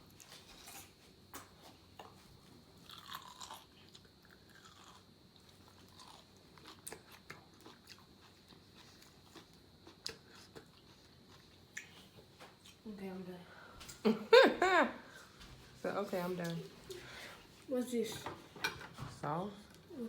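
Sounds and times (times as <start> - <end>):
cucumber being crunched and chewed: 2.8 - 12.0.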